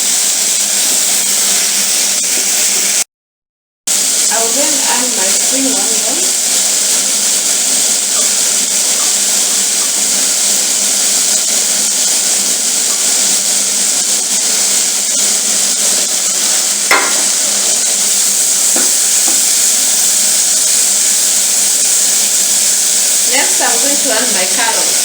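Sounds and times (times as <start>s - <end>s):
vegetables sizzling in oil: 0.0s - 3.1s, 3.9s - 25.0s.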